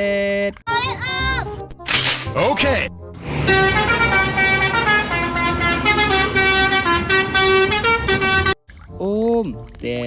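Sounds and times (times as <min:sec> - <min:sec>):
multi-tone bus horn tune: 0:03.3 - 0:08.6.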